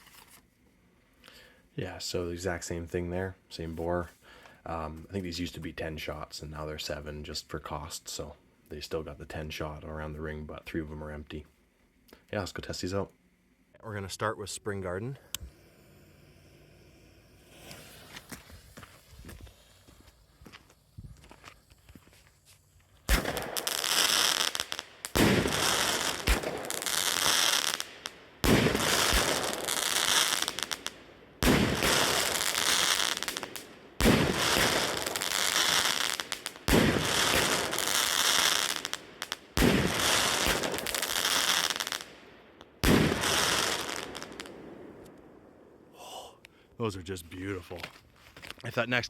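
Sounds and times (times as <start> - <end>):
firework crackle and fizz: 15.4 - 42.2, 42.8 - 44.5
firework bangs: 16.2 - 20.0, 23.0 - 42.1, 42.8 - 45.0.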